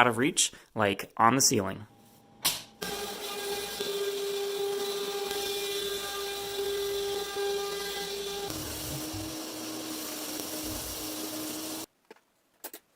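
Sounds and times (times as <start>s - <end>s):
vacuum motor whining: 2.8s - 11.9s.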